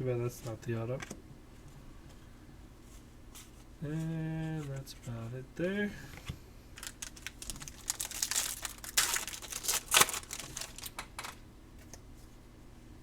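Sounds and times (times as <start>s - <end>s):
foil wrapper crinkling and tearing: 6.8s - 11.4s.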